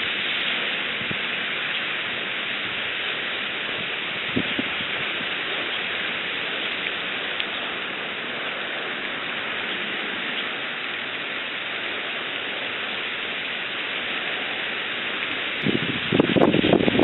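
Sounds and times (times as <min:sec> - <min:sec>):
rain hissing on pond: 0:00.0 - 0:17.0.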